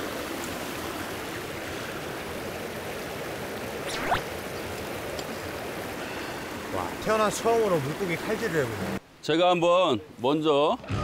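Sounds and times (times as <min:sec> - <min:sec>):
stream water rushing: 0:00.0 - 0:10.6
sharp rising sound: 0:03.9 - 0:04.3.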